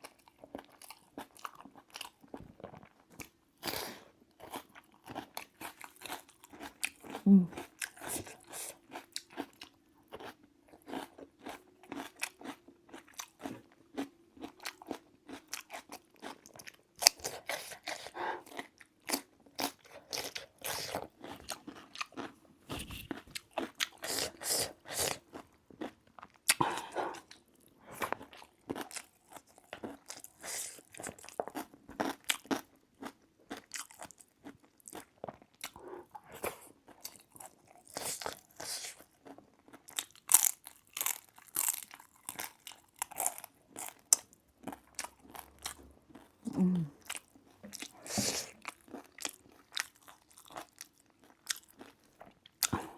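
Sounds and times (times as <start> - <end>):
person crunching and chewing food: 0.0 - 52.9.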